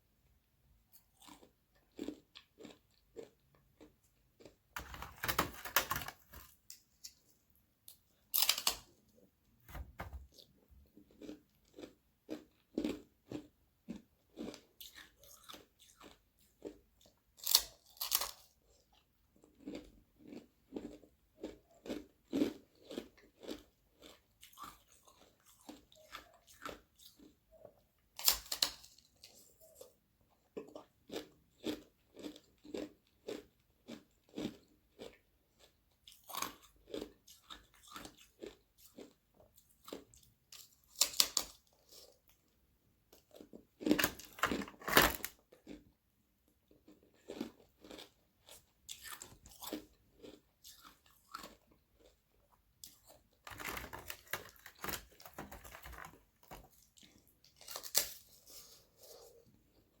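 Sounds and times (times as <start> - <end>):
crunching ice: 43.8 - 45.4, 53.4 - 56.7.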